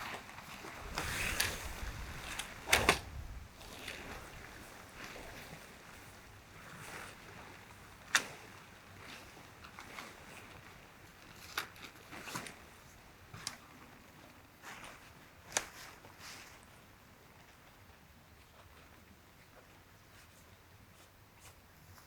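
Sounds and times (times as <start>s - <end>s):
soft rustling: 0.0s - 10.2s.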